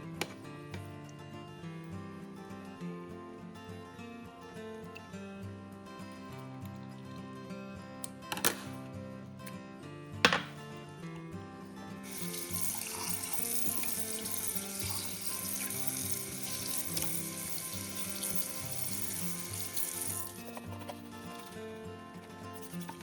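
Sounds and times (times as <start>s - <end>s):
tap water running into a sink: 12.0s - 21.6s, 22.4s - 23.0s.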